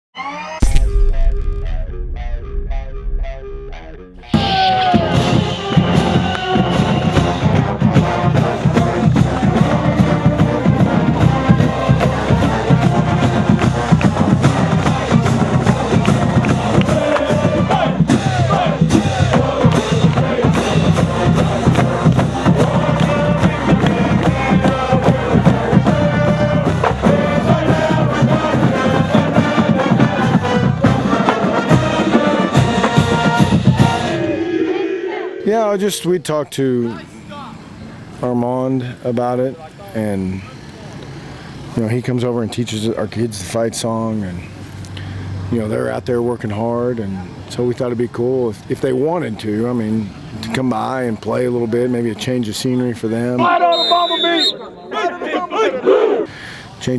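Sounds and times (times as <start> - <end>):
drums: 0.6 - 34.6
marching band playing: 0.6 - 35.1.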